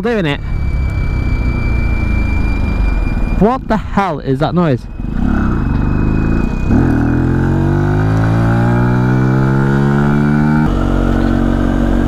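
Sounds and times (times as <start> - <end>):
thin high whistle: 0.0 - 3.8, 4.5 - 7.0
motorcycle engine accelerating: 4.8 - 12.0.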